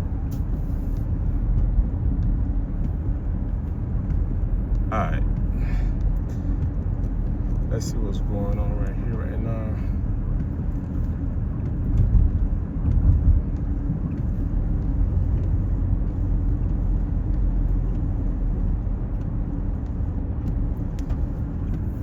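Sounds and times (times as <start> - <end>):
car engine noise: 0.0 - 22.0
road rumble inside car: 0.0 - 22.0.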